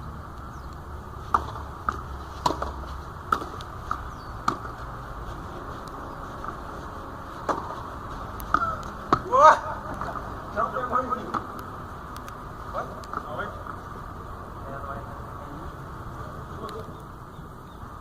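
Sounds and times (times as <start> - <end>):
tennis ball bouncing: 1.2 - 9.3, 11.2 - 11.6
tennis racquet hitting ball: 1.3 - 4.8.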